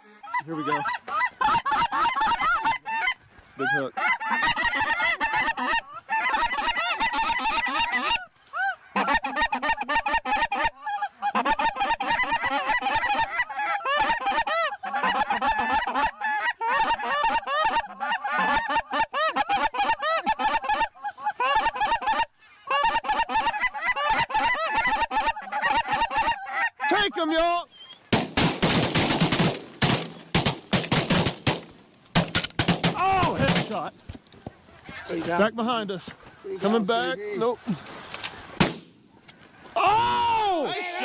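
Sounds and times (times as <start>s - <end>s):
geese honking: 0.0s - 28.0s, 34.6s - 37.1s.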